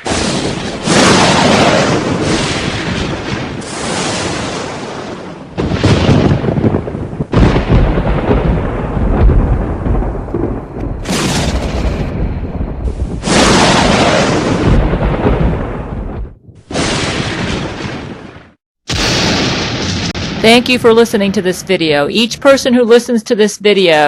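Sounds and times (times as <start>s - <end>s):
thunderclaps rumbling: 0.0s - 21.2s.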